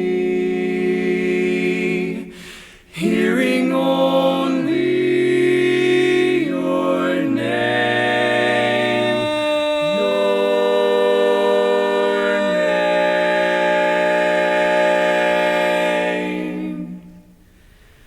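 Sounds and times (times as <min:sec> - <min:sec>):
men singing close harmony: 0:03.0 - 0:17.2.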